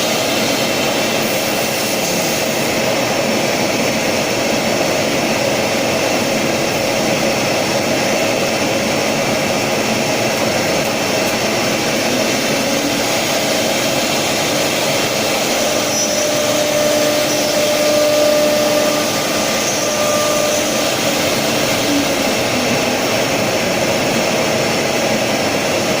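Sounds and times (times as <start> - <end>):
router spindles whirring: 10.6 - 24.8.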